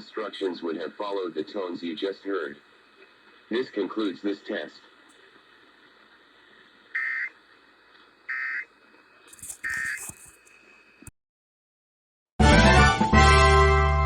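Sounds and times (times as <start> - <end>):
faint radio hiss: 0.0 - 11.1
radio crackle: 0.1 - 11.1
electronic data buzzes: 6.9 - 7.4, 8.3 - 8.7, 9.3 - 11.1.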